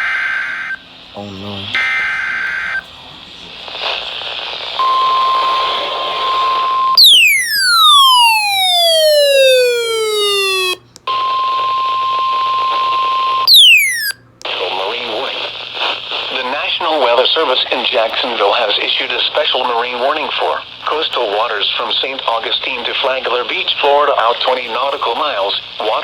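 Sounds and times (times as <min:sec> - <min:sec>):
steady warning alarm tone: 0:00.0 - 0:02.9, 0:04.8 - 0:14.2
radio hiss: 0:00.0 - 0:10.8, 0:14.4 - 0:26.0
loud falling pitch glide: 0:07.0 - 0:10.8, 0:13.5 - 0:14.1
warbling data burst: 0:07.0 - 0:10.8, 0:13.5 - 0:14.2.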